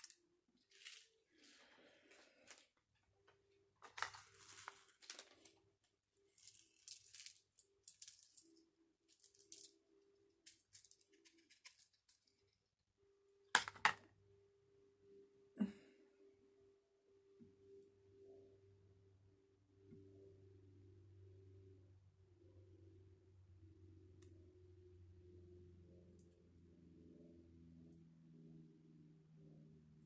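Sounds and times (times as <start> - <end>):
packaging rustling and crinkling: 0.0 - 2.7, 3.8 - 8.6.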